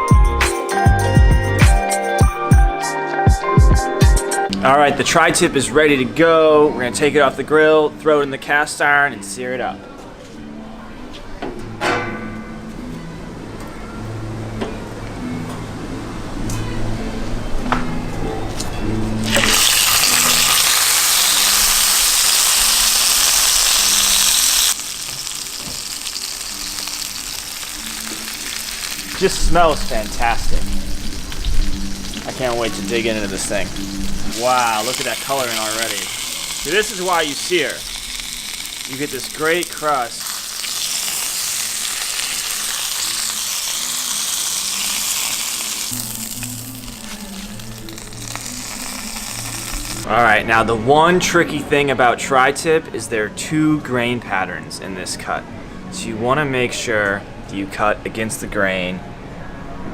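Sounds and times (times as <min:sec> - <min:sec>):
background music: 0:00.0 - 0:59.9
meat sizzling in a pan: 0:19.2 - 0:50.1.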